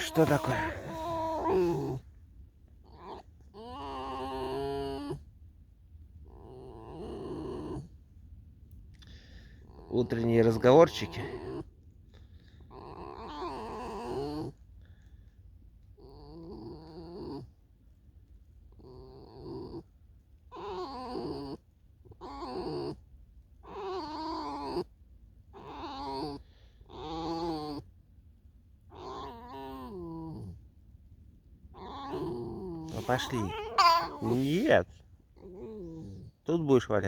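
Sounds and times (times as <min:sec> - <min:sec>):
fox whining calls: 0:00.0 - 0:02.1, 0:02.8 - 0:05.2, 0:12.7 - 0:14.6, 0:20.5 - 0:23.0, 0:23.6 - 0:24.9, 0:25.5 - 0:27.9, 0:28.9 - 0:30.6, 0:31.7 - 0:36.3.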